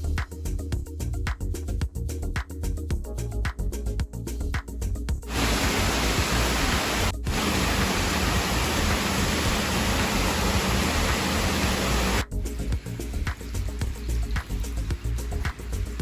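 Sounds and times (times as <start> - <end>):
rushing water: 5.3 - 16.0.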